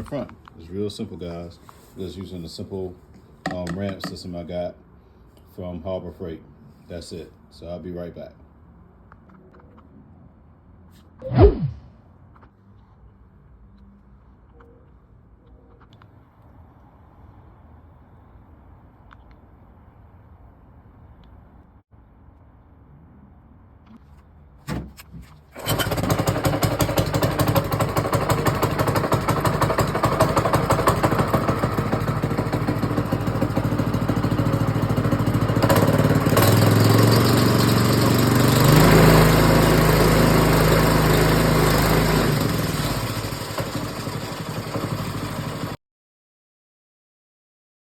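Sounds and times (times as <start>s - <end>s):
engine starting and running: 25.5s - 45.8s.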